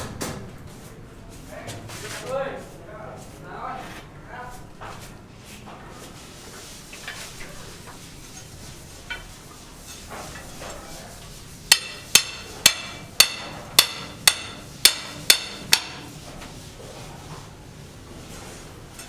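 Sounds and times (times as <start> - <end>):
hammer striking metal: 11.7 - 16.1.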